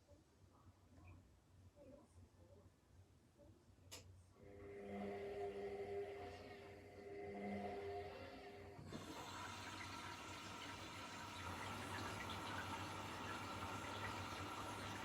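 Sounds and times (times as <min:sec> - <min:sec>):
washing machine humming: 0:04.4 - 0:15.0.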